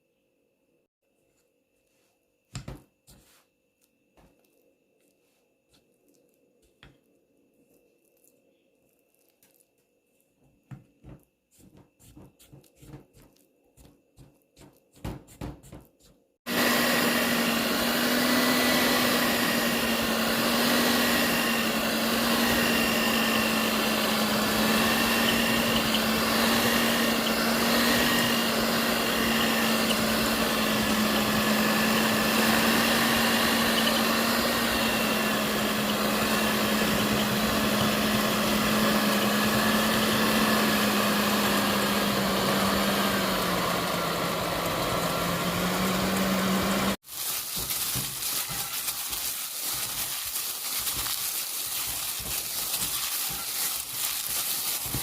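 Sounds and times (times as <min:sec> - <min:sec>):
electric mixer humming: 0:16.5 - 0:47.0.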